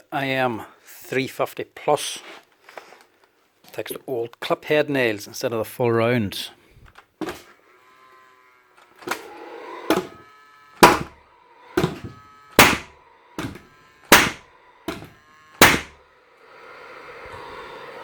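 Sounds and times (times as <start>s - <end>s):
nail gun clacking: 10.8s - 11.1s, 11.8s - 16.0s.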